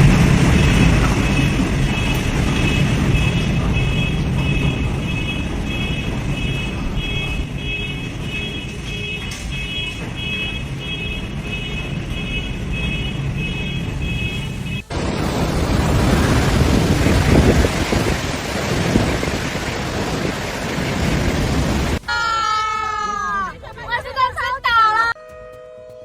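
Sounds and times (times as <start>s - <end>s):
heavy wind and rain: 0.0s - 22.1s.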